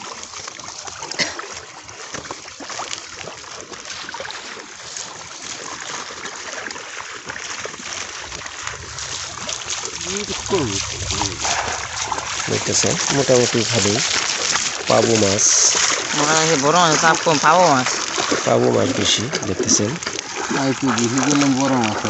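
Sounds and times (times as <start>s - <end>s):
water splashing and dripping: 0.0s - 22.0s.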